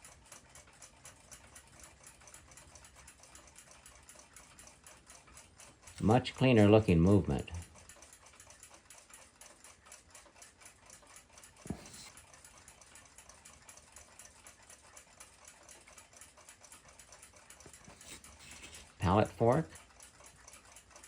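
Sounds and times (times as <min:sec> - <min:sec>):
clock ticking rapidly: 0:00.0 - 0:21.0.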